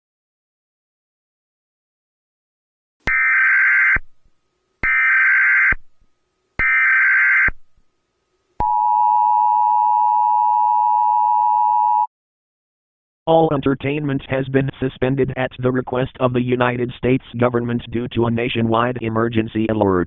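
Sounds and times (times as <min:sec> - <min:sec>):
buzzing data bursts: 0:03.1 - 0:05.9, 0:06.6 - 0:07.6.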